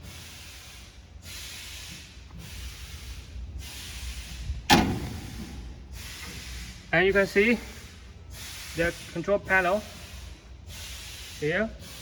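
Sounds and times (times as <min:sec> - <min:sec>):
pneumatic valves hissing: 0:00.1 - 0:06.9
low machine hum: 0:04.5 - 0:06.0
loud sharp clank: 0:04.7 - 0:05.7.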